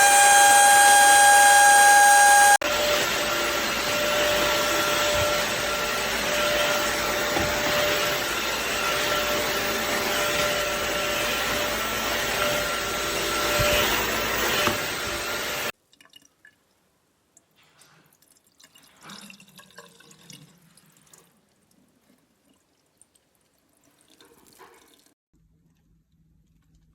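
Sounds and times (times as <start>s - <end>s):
floor cleaner motor whining: 0.0s - 15.7s.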